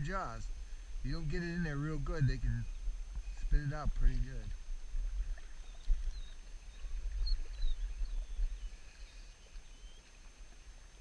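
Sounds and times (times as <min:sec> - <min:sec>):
river low rumble: 0:00.0 - 0:11.0
faint bird chirps: 0:05.4 - 0:10.2.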